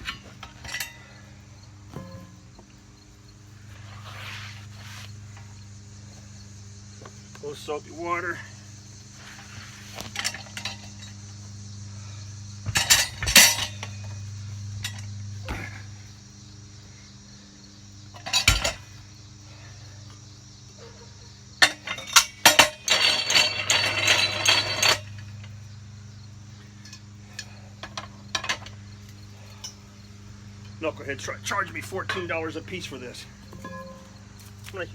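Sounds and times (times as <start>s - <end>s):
tire tools clanking on wheel rim: 0.0s - 6.3s, 6.9s - 11.5s, 12.6s - 16.0s, 18.1s - 21.0s, 21.6s - 25.7s, 26.5s - 30.0s, 30.6s - 34.9s
metal scraping with high ringing: 33.5s - 34.2s.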